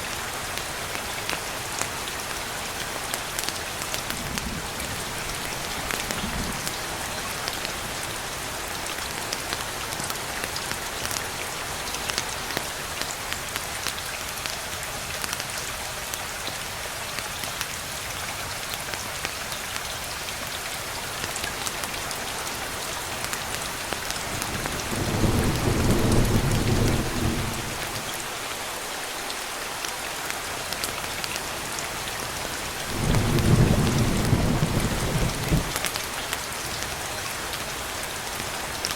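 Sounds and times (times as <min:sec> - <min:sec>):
rain pattering: 0:00.0 - 0:38.9
low rolls of thunder: 0:24.8 - 0:28.0, 0:32.9 - 0:35.8.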